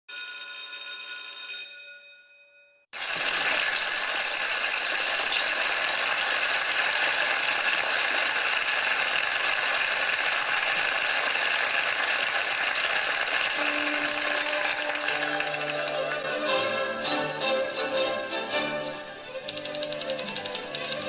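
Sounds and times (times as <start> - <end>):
water running from tap: 3.0 - 10.9.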